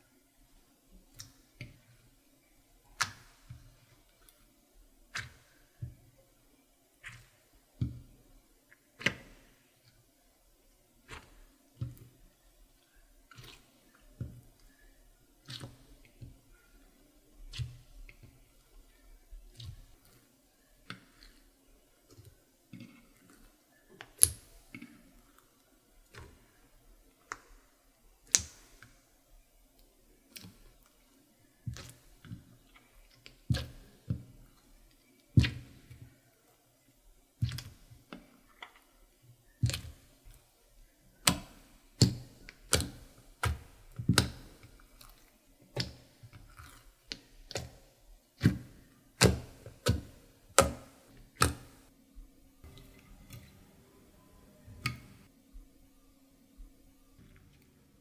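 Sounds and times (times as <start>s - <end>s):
slime clicking and popping: 49.2s - 51.8s.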